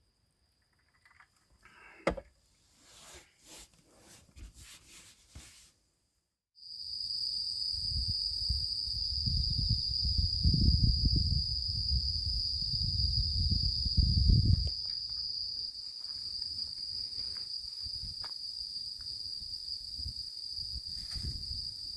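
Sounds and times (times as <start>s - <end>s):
insects trilling: 6.6s - 21.9s.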